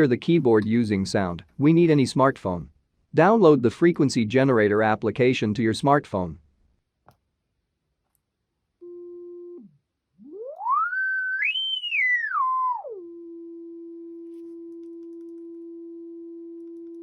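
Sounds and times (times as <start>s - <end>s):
electronic tone sweeping in pitch: 9.6s - 13.4s.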